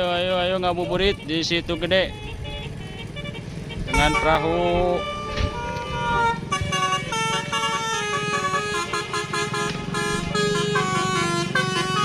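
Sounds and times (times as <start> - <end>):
horn playing quick melody: 3.9 - 12.0.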